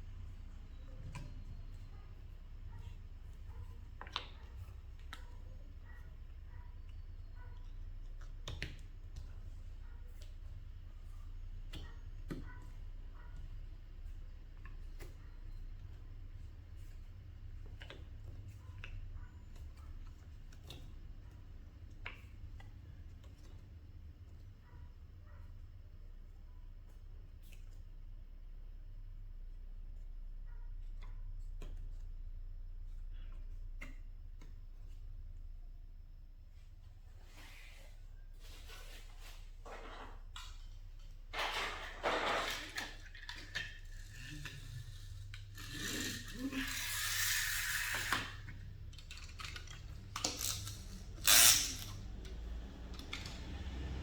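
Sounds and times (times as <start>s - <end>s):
low steady hum: 0.0s - 41.9s.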